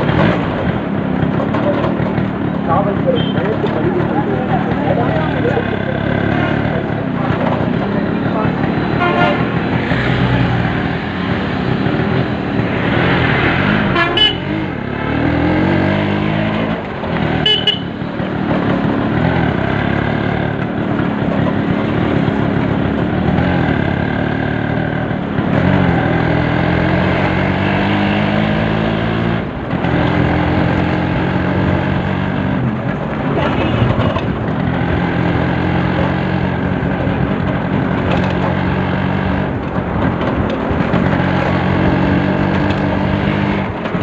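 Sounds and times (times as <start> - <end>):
motorcycle engine revving: 0.0 - 44.0
horn toots: 8.9 - 9.7, 13.8 - 14.7, 17.4 - 18.0.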